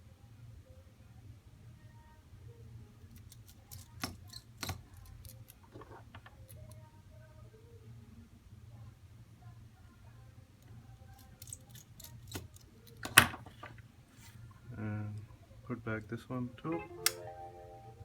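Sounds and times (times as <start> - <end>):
small sharp metal clicks: 3.1 - 6.8, 11.1 - 13.4.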